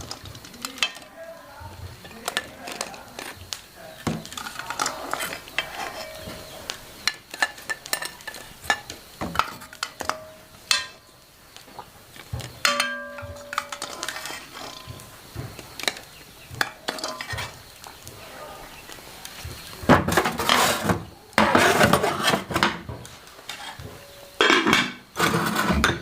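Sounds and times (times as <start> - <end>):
utensils clinking against pots: 0.0 - 11.1, 12.4 - 15.1, 15.8 - 17.6, 19.9 - 26.0
bowl ringing: 12.6 - 13.9.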